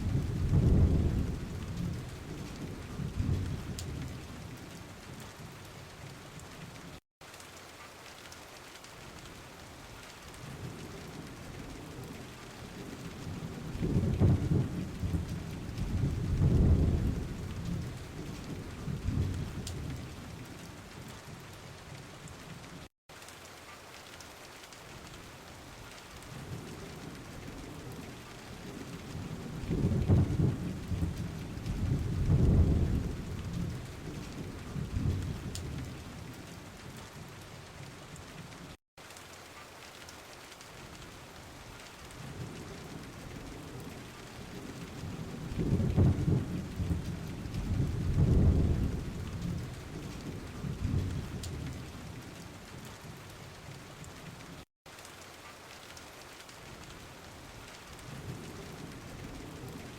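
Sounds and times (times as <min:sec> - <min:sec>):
rolling thunder rumble: 0:00.0 - 0:04.7, 0:10.6 - 0:20.5, 0:26.4 - 0:36.4, 0:42.3 - 0:52.5
steady rain falling: 0:00.0 - 0:59.9.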